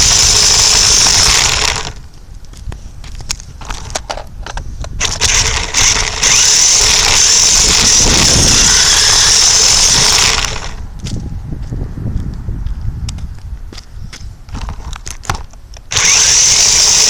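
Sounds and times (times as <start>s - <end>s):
toy truck electric motor whirring: 0.0s - 2.0s, 5.0s - 10.8s, 15.9s - 17.0s.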